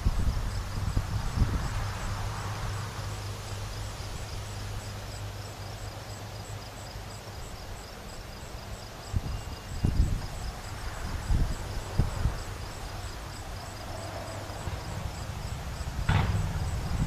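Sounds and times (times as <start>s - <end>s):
insects chirping: 0.0s - 17.0s
steady low rumble: 14.6s - 17.0s.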